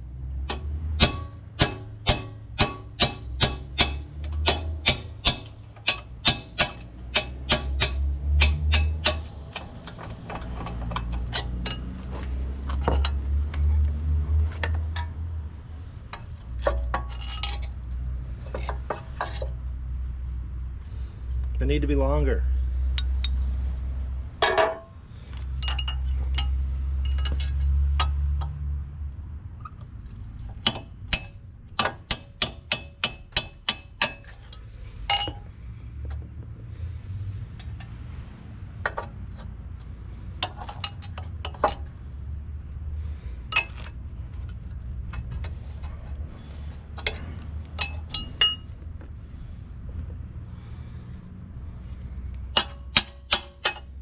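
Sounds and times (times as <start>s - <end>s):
low steady rumble: 0.0s - 54.0s
hammer striking steel: 0.5s - 9.4s, 30.6s - 34.4s, 52.5s - 53.9s.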